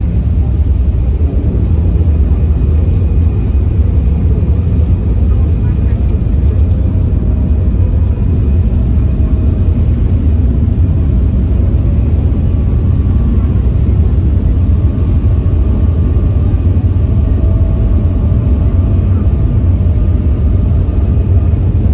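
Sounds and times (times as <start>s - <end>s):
ferry engine deep rumble: 0.0s - 21.9s.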